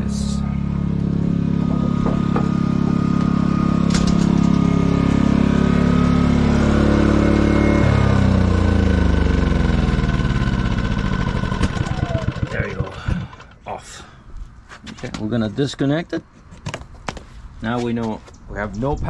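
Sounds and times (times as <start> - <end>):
portable generator engine running: 0.0 - 13.8.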